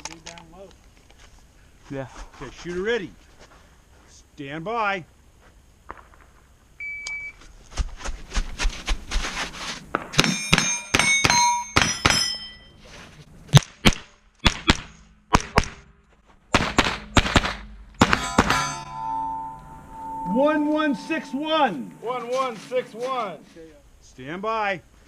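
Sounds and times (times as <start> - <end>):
steel targets ringing: 10.2 - 12.8, 17.0 - 23.4
rifle shots: 16.5 - 18.8.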